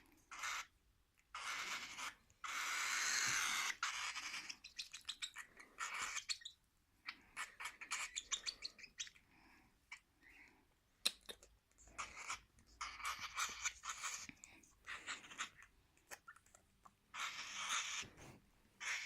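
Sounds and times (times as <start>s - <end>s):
bird chicks begging calls: 0.3s - 0.7s, 1.3s - 9.2s, 17.1s - 18.1s.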